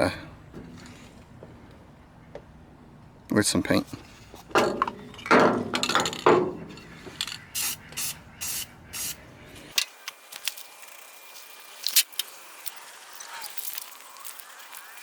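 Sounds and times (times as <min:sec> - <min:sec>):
handling noise: 0:03.9 - 0:07.5
spray paint can hissing: 0:07.6 - 0:09.2, 0:10.2 - 0:15.0.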